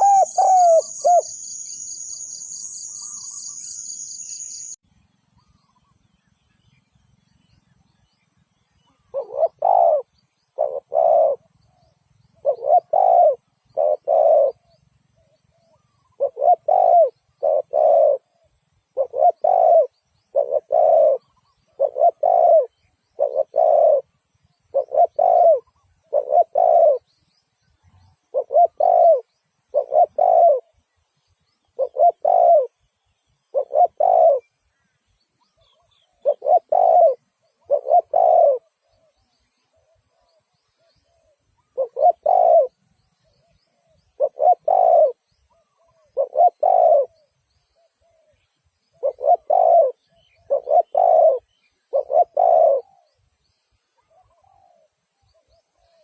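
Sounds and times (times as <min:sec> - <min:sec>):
dove cooing: 0:00.0 - 0:01.4, 0:09.0 - 0:11.8, 0:12.4 - 0:27.1, 0:28.3 - 0:30.8, 0:31.7 - 0:32.8, 0:33.5 - 0:34.5, 0:35.5 - 0:53.2, 0:54.0 - 0:56.0.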